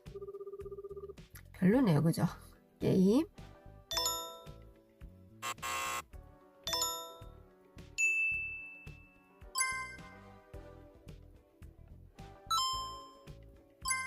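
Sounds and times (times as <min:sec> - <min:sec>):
bell-like chime ding: 0:08.0 - 0:10.2, 0:12.5 - 0:14.0.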